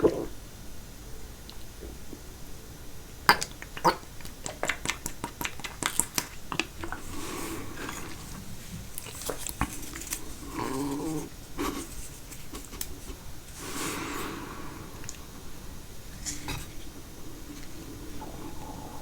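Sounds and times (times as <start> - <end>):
close chewing with mouth smacks: 3.3 - 7.2, 7.8 - 13.3.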